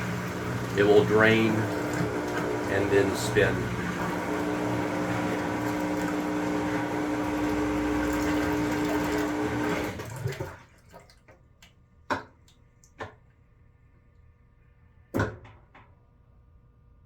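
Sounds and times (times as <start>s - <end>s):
washer drain pump running: 0.0s - 11.4s.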